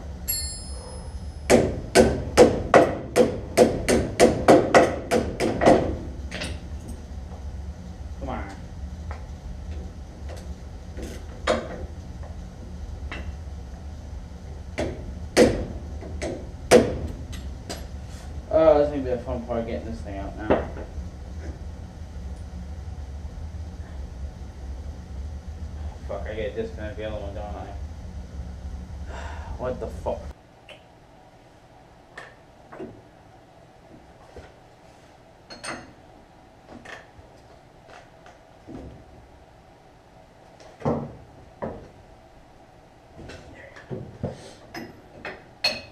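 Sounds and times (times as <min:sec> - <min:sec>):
faint steady hum: 0:00.0 - 0:45.9.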